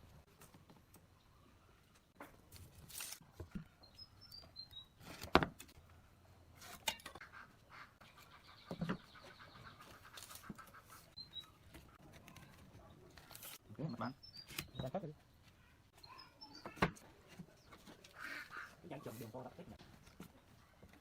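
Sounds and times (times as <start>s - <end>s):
bird chirps: 3.7s - 5.0s, 8.0s - 11.9s, 13.8s - 19.5s.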